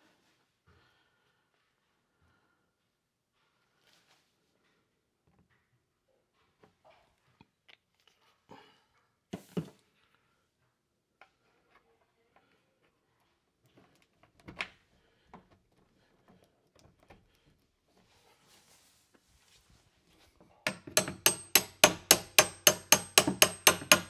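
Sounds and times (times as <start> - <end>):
metal clicks and knocks of hinge pin: 20.7 - 24.0.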